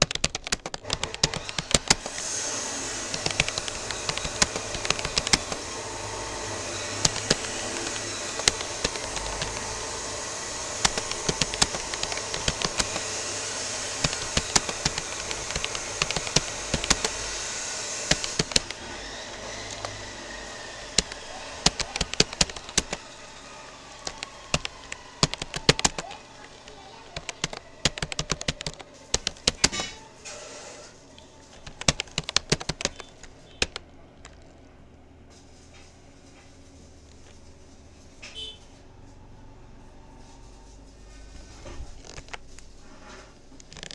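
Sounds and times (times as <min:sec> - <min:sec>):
keyboard typing clicks: 0:00.0 - 0:30.1, 0:31.2 - 0:34.6, 0:43.6 - 0:43.9.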